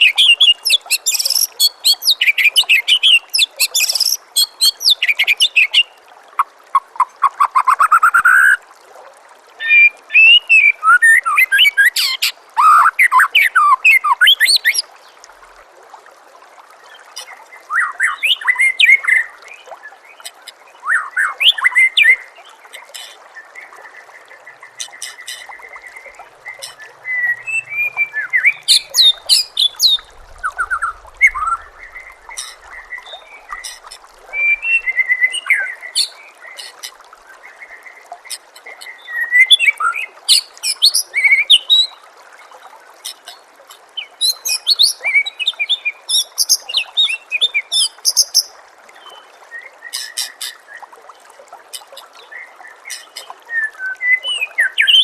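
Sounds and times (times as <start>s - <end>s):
trickle of water: 0.0s - 55.0s
bird singing whistles and trills: 9.6s - 14.8s, 25.2s - 33.7s, 34.4s - 36.2s, 53.2s - 55.0s.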